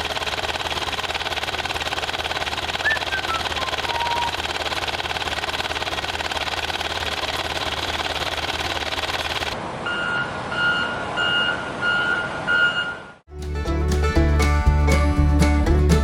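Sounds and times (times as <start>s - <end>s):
small engine chattering: 0.0s - 9.6s
reversing alarm beeps: 9.9s - 13.2s.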